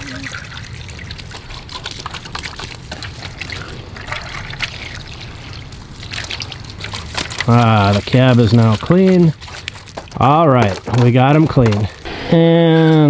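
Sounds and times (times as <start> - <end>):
water spraying over plastic toy: 0.0 - 13.0.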